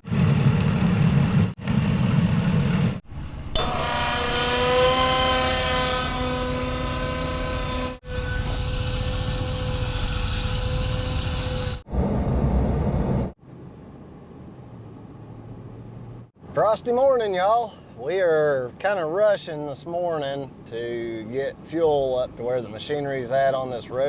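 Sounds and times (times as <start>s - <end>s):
heavy machinery engine: 0.0s - 13.3s
high machine whine: 0.0s - 13.4s.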